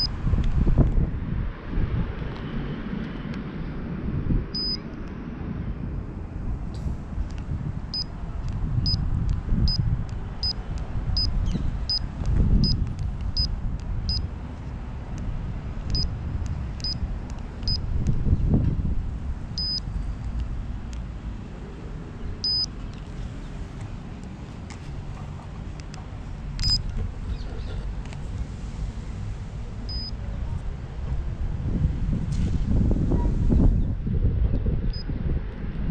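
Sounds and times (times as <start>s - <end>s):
short high beeps: 4.6s - 4.8s, 19.6s - 19.9s, 22.4s - 22.7s, 26.6s - 26.8s, 29.9s - 30.1s.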